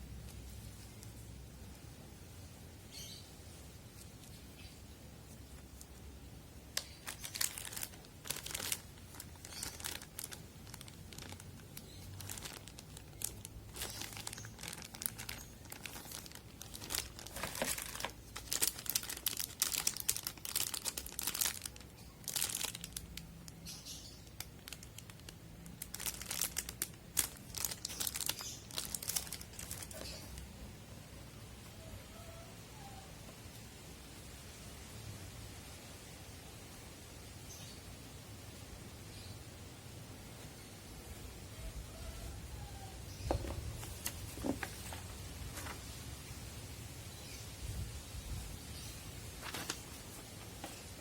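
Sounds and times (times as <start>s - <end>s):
plastic packaging crinkling: 6.7s - 30.4s, 49.4s - 50.8s.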